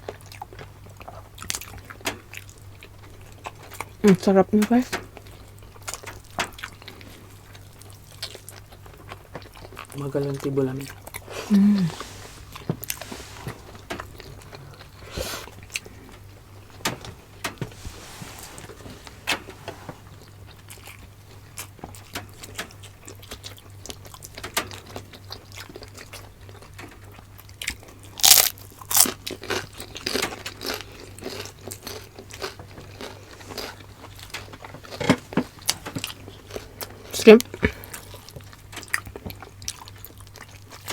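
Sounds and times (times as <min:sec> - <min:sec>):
chewing and crunching food: 0:00.0 - 0:40.9
steady low hum: 0:00.5 - 0:26.6.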